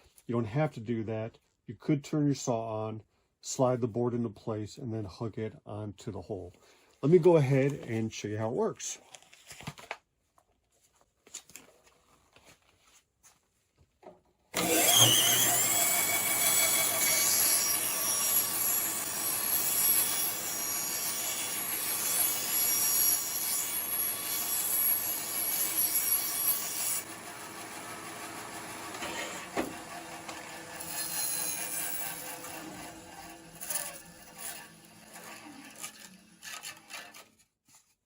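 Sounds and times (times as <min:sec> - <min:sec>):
bandsaw cutting plywood: 0:14.5 - 0:37.5.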